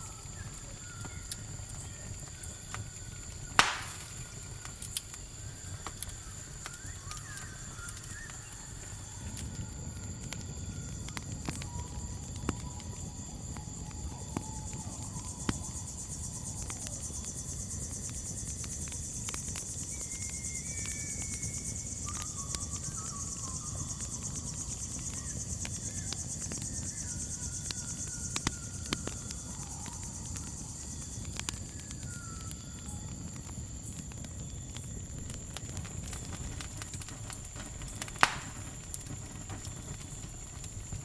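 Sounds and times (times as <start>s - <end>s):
whistled bird calls: 0.0s - 9.7s, 19.9s - 33.1s, 37.7s - 38.8s
campfire pops and crackles: 0.0s - 41.0s
crickets trilling: 0.0s - 41.0s.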